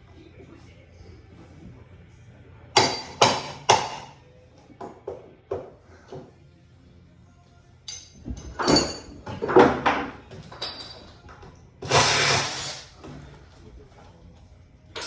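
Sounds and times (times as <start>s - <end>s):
power tool burst: 11.8s - 12.9s.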